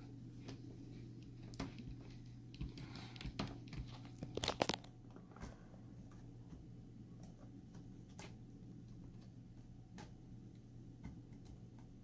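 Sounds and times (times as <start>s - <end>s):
plastic creaking and crackling: 1.4s - 5.6s.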